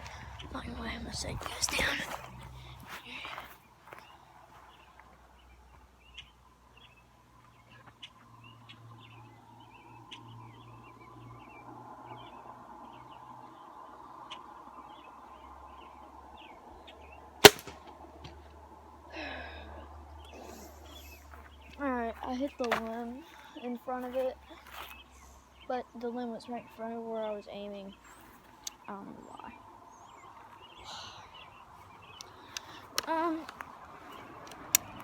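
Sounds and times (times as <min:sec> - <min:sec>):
small birds chirping: 0:00.0 - 0:17.7, 0:19.2 - 0:35.0
gunshot: 0:17.4 - 0:17.8.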